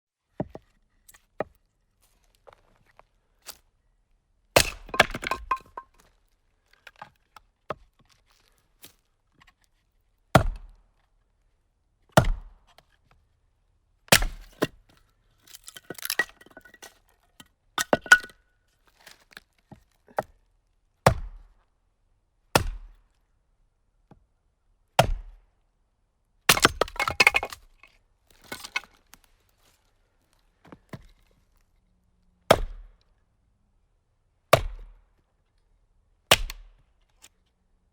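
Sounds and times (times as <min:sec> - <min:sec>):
axe splitting wood: 0:04.6 - 0:05.9, 0:10.4 - 0:10.7, 0:12.1 - 0:12.6, 0:14.1 - 0:14.8, 0:15.5 - 0:16.8, 0:17.8 - 0:18.3, 0:21.1 - 0:21.4, 0:22.6 - 0:23.0, 0:25.0 - 0:25.4, 0:26.5 - 0:27.7, 0:28.4 - 0:29.0, 0:32.5 - 0:33.0, 0:34.5 - 0:35.0, 0:36.3 - 0:36.8
wood knocking and clinking: 0:04.6 - 0:06.0, 0:15.6 - 0:16.9, 0:17.8 - 0:18.3, 0:26.5 - 0:27.8.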